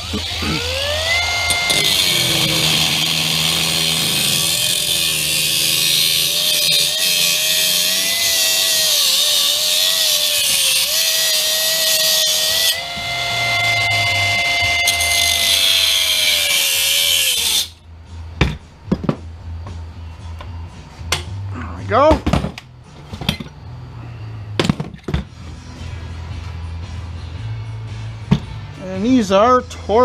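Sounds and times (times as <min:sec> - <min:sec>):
motor whine: 0:00.0 - 0:04.7, 0:12.7 - 0:16.1
power tool cutting steel: 0:00.0 - 0:17.8.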